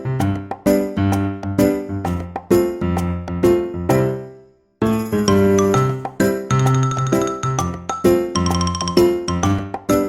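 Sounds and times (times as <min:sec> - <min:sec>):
cheerful light background melody: 0:00.0 - 0:10.0.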